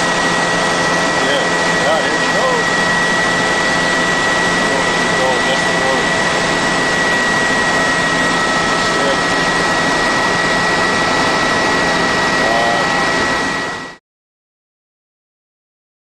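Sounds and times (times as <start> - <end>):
helicopter rotor roar: 0.0 - 14.0
high-pitched whine: 0.0 - 14.0.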